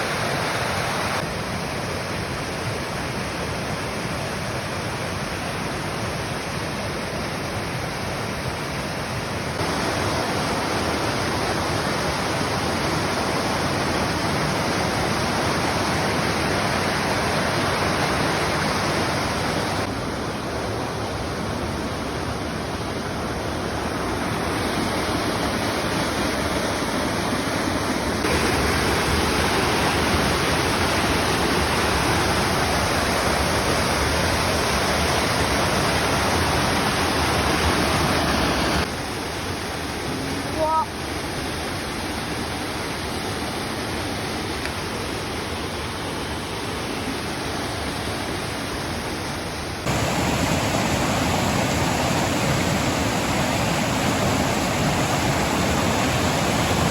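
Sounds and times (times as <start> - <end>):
waterfall roaring: 0.0 - 56.9.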